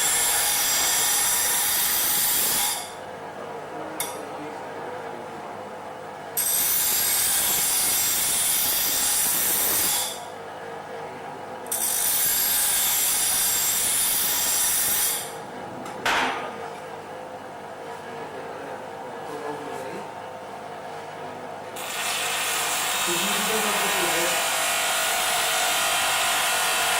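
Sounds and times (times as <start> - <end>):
bench grinder motor hum: 21.8 - 26.9
loud grinding hiss: 21.8 - 26.9.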